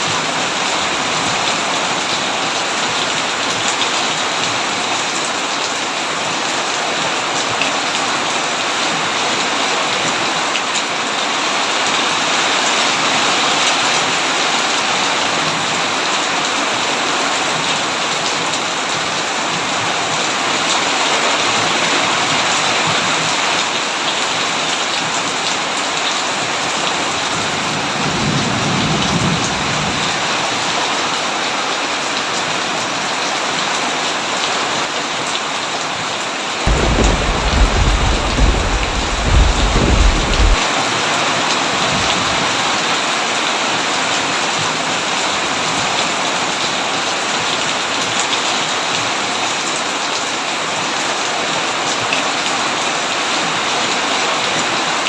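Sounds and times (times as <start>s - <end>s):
heavy rain pouring: 0.0s - 55.0s
distant thunder rumble: 36.7s - 40.6s.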